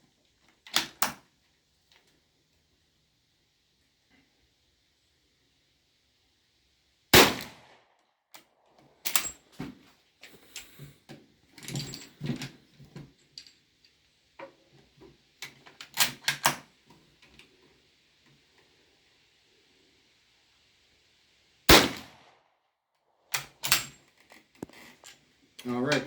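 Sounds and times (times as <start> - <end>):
rifle bolt clicking and clacking: 9.0 - 9.4, 15.8 - 16.6, 23.3 - 24.0.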